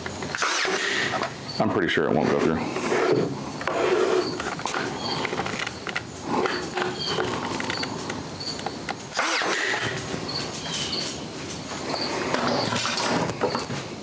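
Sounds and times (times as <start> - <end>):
nail gun shot: 0.4 - 1.2.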